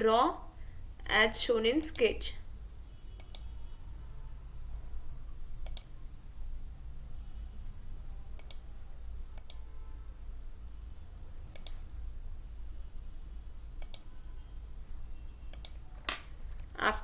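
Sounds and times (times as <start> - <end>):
low steady hum: 0.0 - 17.0
computer mouse clicks: 3.2 - 3.5, 5.6 - 5.9, 8.4 - 8.7, 9.4 - 9.6, 11.5 - 11.9, 13.8 - 14.1, 15.5 - 16.8.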